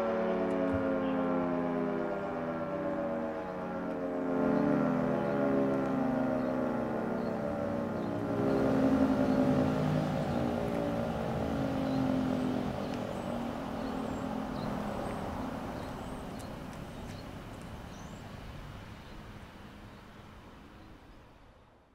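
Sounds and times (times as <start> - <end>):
dual-tone siren winding down: 0.0 - 16.0.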